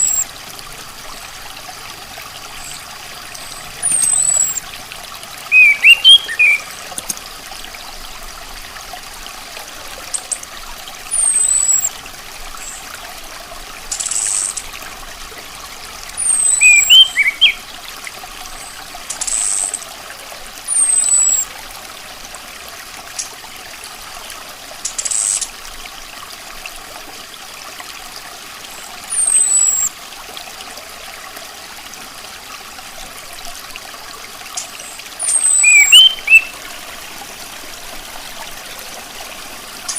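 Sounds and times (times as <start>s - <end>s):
thrush whistles and twittering: 0.0s - 0.2s, 3.6s - 4.7s, 5.5s - 6.8s, 11.1s - 11.9s, 16.2s - 17.6s, 20.7s - 21.5s, 29.1s - 29.9s, 34.6s - 36.6s
water-like background hiss: 0.0s - 39.9s
harsh hissy bird notes: 5.5s - 6.8s, 16.2s - 17.6s, 34.6s - 36.5s.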